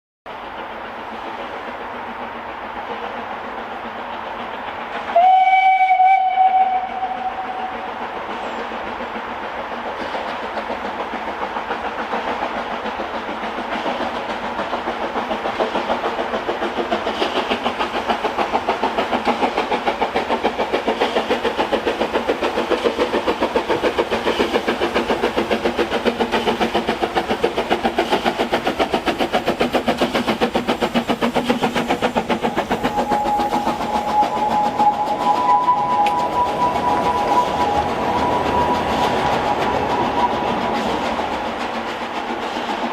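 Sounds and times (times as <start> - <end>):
steam locomotive chuffing: 0.3 - 42.9
steam whistle tone: 5.1 - 8.7, 32.4 - 41.1.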